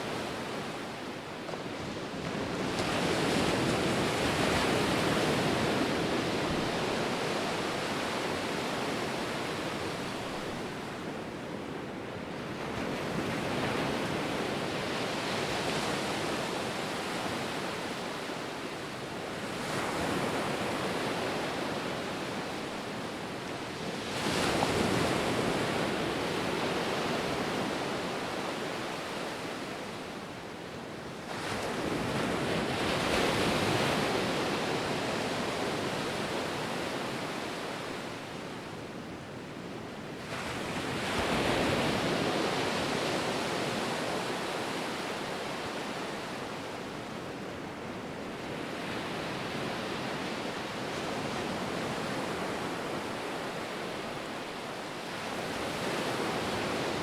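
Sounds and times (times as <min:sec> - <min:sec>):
waves breaking and washing in: 0:00.0 - 0:57.0.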